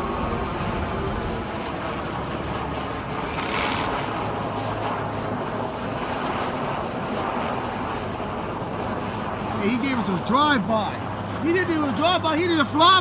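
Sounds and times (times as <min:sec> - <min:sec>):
airplane engine drone: 0:00.0 - 0:13.0
brief hissing rush: 0:02.6 - 0:04.0.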